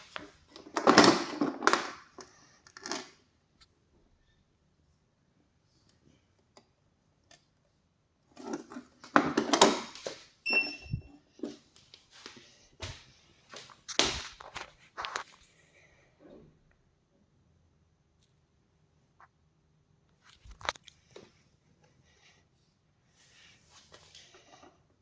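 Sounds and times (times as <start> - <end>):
short high electronic beep: 10.5 - 11.1.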